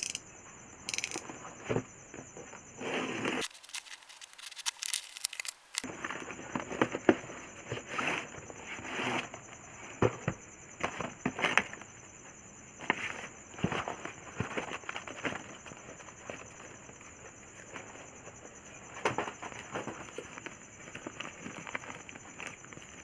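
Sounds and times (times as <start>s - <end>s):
packaging being torn open: 3.4s - 5.9s.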